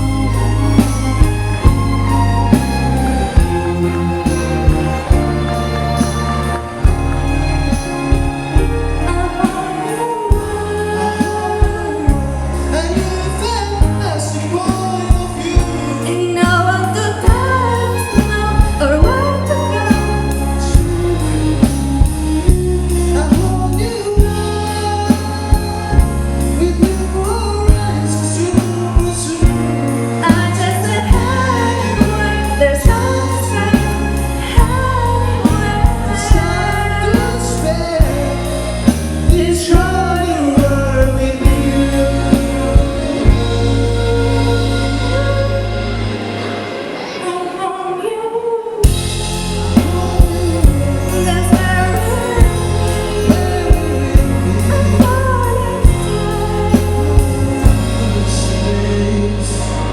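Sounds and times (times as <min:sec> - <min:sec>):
drum beat: 0:00.0 - 0:10.8
bass line: 0:00.0 - 0:47.0, 0:48.8 - 0:59.9
person singing: 0:00.0 - 0:59.9.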